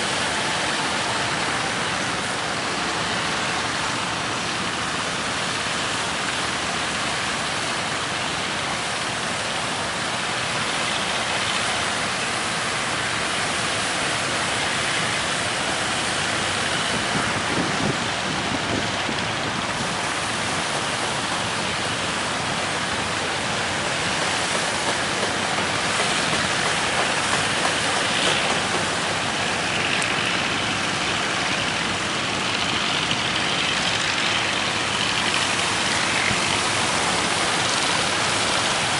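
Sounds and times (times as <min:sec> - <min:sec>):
boat engine running: 0:00.0 - 0:38.9
waves breaking: 0:00.0 - 0:38.9
strong wind: 0:12.4 - 0:38.9.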